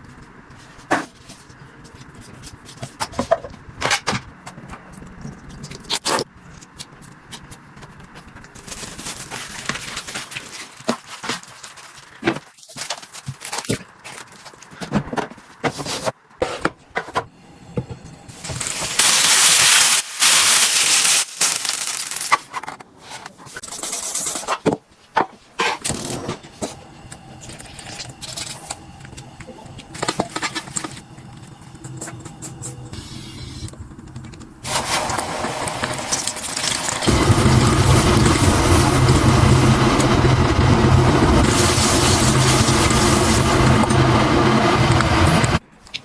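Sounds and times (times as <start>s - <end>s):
clicks scrapes and crackles: 4.2s - 14.8s
loud hiss: 18.3s - 22.3s, 34.6s - 45.6s.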